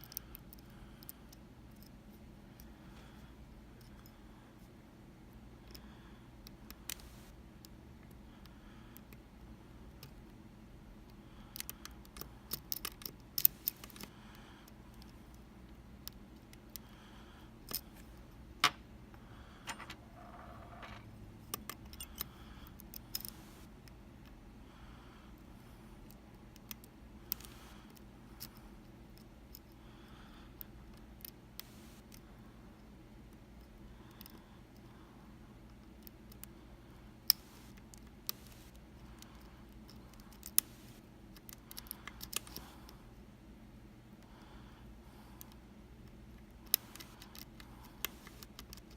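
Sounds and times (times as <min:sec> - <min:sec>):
lock picks clicking: 0:11.5 - 0:14.1, 0:21.5 - 0:23.6, 0:37.3 - 0:42.6.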